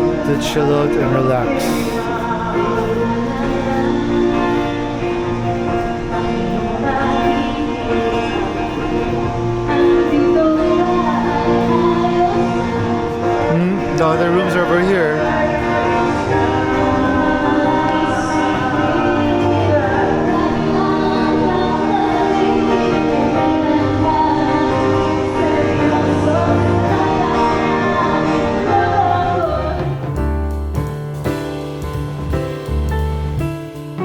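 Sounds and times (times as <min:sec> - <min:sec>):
music with singing voices: 0:00.0 - 0:34.0
drum and bass groove: 0:28.7 - 0:34.0.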